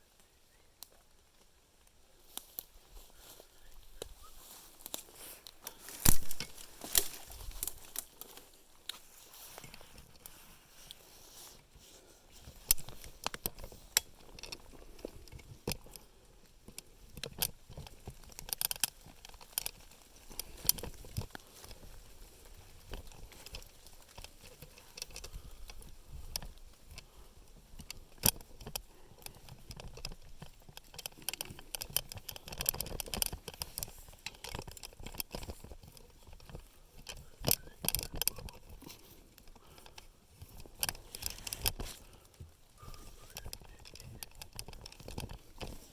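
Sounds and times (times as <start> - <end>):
branches and twigs crackling: 0.0 - 45.9.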